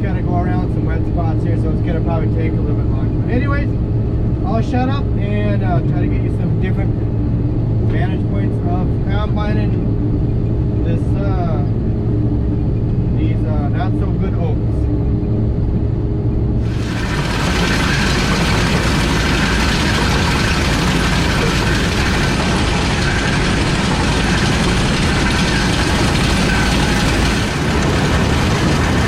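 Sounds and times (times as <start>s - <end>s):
combine harvester running: 16.5s - 29.0s.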